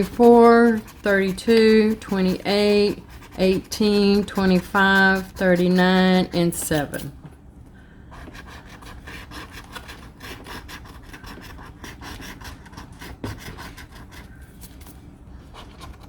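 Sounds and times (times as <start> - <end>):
scratch card being scratched: 0.0 - 7.1.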